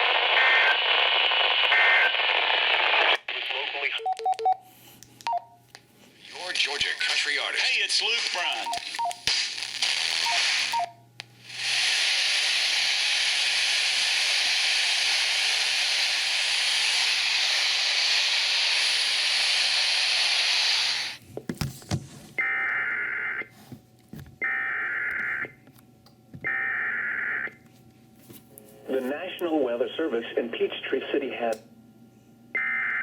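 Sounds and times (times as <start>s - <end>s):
radio static hiss: 0.0s - 4.1s, 6.0s - 21.2s, 28.7s - 31.7s
digital data tones: 10.2s - 10.9s.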